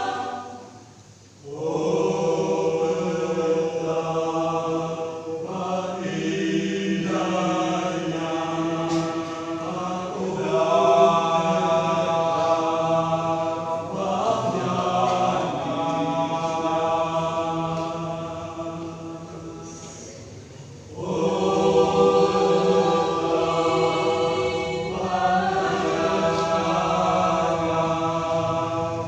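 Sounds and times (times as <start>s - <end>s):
church choir singing: 0.0s - 29.0s.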